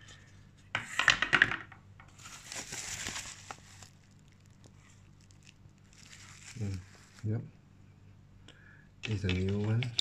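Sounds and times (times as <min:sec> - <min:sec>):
plastic packaging crinkling: 0:02.1 - 0:07.4.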